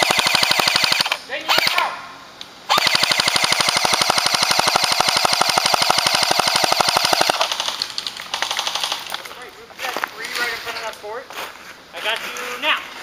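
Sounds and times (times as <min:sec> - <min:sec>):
airsoft gun full-auto burst: 0:00.0 - 0:01.9, 0:02.7 - 0:09.2.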